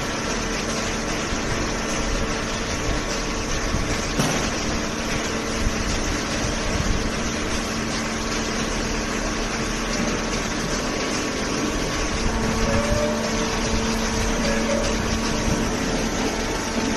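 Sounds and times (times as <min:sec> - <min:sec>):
electric motor humming: 0:08.7 - 0:16.9.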